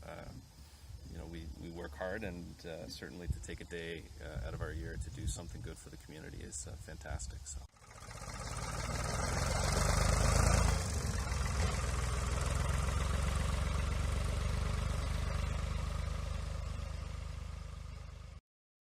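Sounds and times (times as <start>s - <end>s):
engine running steadily: 7.6s - 18.4s.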